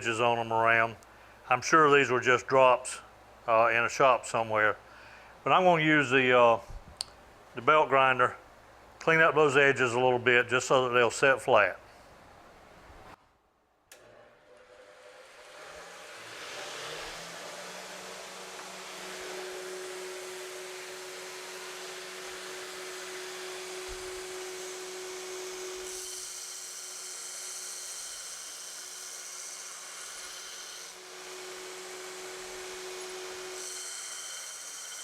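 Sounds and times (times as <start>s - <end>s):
belt grinder grinding steel: 14.4s - 24.5s.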